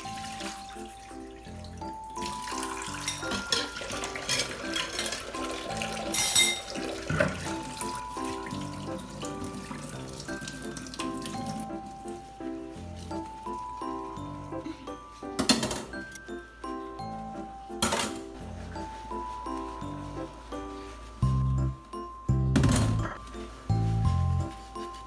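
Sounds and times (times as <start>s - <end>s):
water running from tap: 0.0s - 12.4s
gentle background music: 0.0s - 25.0s
dishes clinking: 2.1s - 12.1s, 13.0s - 20.4s.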